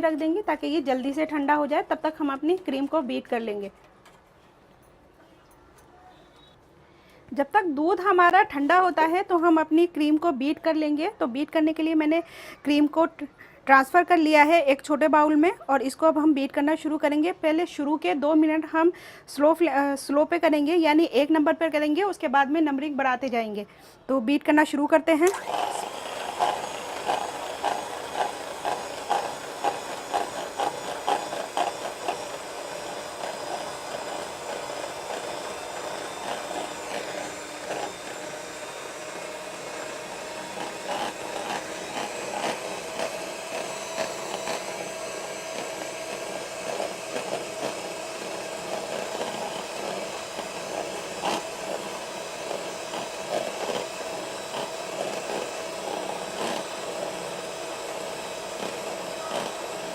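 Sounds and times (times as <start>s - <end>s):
electric beater whipping cream: 25.3s - 59.9s.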